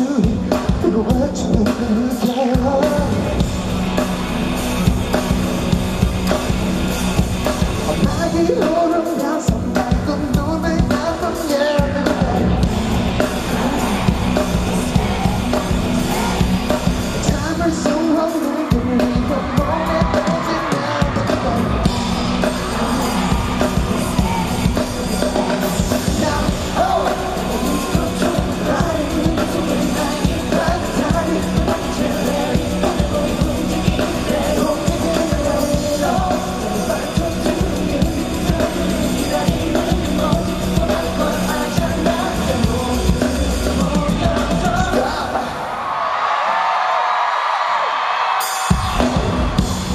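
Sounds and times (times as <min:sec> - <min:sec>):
man singing: 0:00.0 - 0:03.6, 0:07.4 - 0:45.8
crowd yelling: 0:11.3 - 0:49.9
dance beat: 0:11.8 - 0:18.1, 0:18.7 - 0:43.1.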